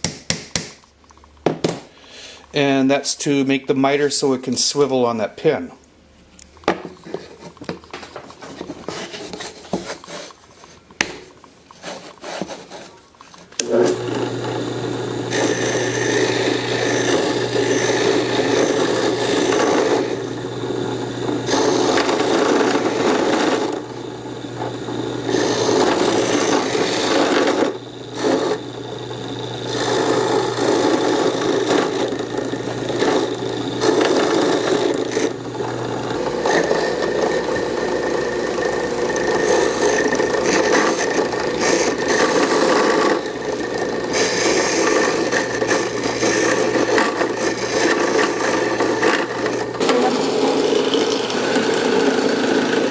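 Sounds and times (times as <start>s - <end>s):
power tool rasping into wood: 13.6s - 52.9s.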